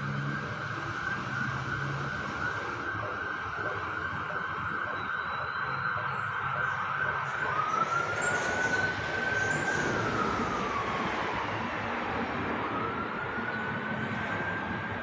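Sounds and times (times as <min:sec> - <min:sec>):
emergency siren wailing: 0:00.0 - 0:15.0.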